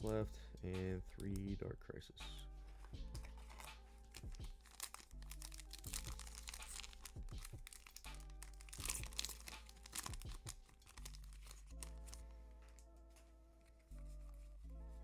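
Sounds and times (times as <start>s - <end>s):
background music: 0.0s - 15.0s
foil wrapper crinkling and tearing: 3.2s - 14.3s.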